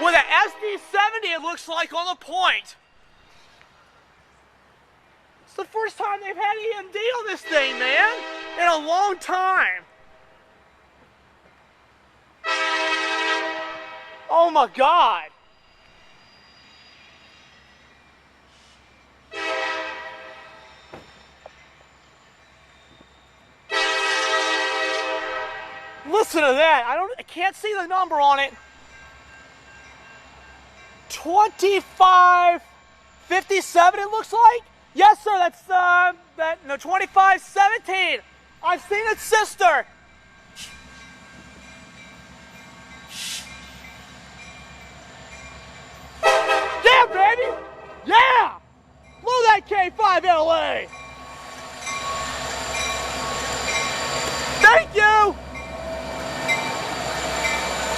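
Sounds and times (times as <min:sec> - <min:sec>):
locomotive air horn blasts: 0:07.4 - 0:08.7, 0:12.4 - 0:14.3, 0:19.3 - 0:20.7, 0:23.7 - 0:26.1, 0:46.2 - 0:48.1
short hiss: 0:18.4 - 0:19.0, 0:40.5 - 0:41.0, 0:43.1 - 0:43.7
diesel locomotive rumble: 0:36.2 - 0:57.9.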